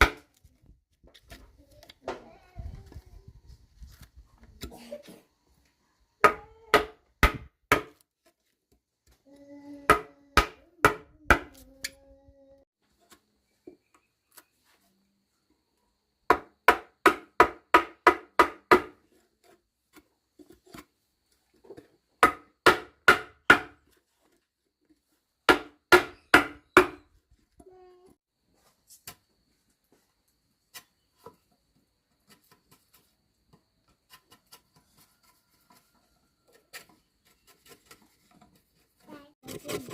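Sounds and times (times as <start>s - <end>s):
tool striking wood: 6.2s - 8.0s, 9.9s - 11.6s, 16.3s - 19.0s, 22.2s - 23.8s, 25.5s - 27.0s.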